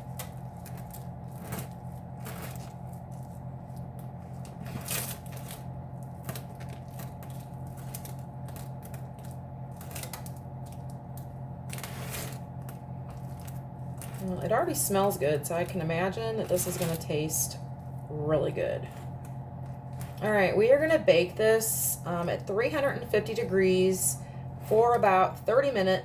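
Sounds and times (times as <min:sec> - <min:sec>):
filling scraped in pie crust: 0:00.0 - 0:10.8, 0:11.6 - 0:18.1
steady low hum: 0:00.0 - 0:26.0.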